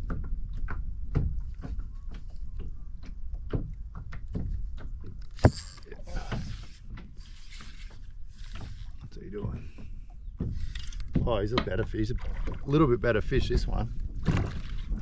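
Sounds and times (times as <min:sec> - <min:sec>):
fishing gear clicks and knocks: 0:00.0 - 0:12.7, 0:13.4 - 0:15.0
low wind rumble: 0:08.0 - 0:15.0.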